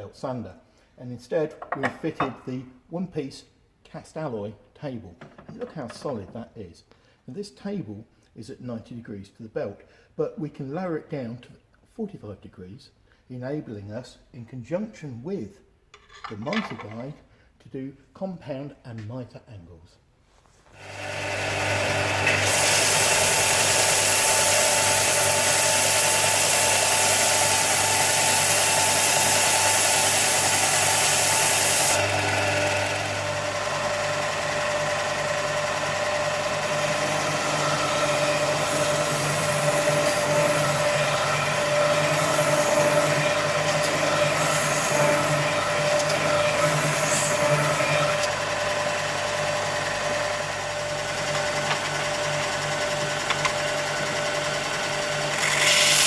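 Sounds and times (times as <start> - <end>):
sander motor humming: 20.8 - 56.0
wood being sanded: 21.1 - 56.0.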